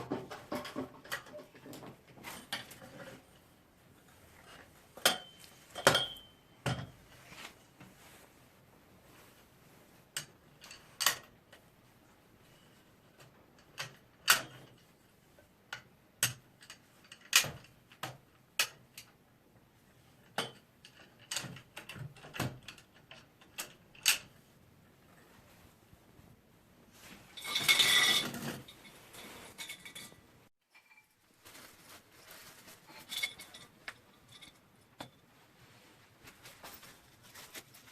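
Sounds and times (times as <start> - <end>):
metal parts clicking and clinking: 27.4 - 31.2.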